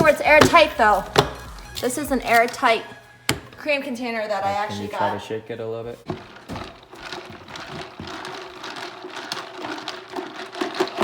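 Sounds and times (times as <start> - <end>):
plastic container knocking and rattling: 6.0 - 11.0.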